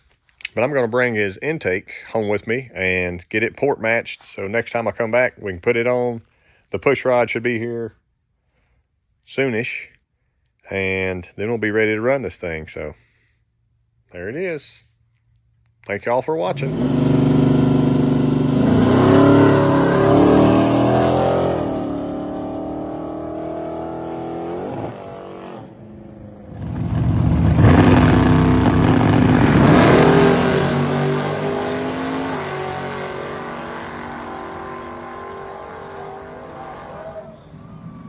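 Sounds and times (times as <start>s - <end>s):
car engine revving: 16.5s - 38.0s.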